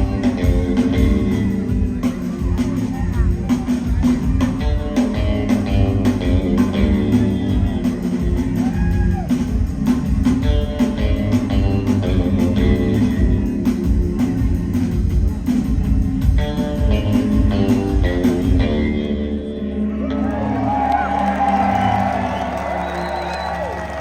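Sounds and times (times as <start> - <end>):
electric guitar: 0.0 - 24.0
rock band playing: 0.0 - 24.0.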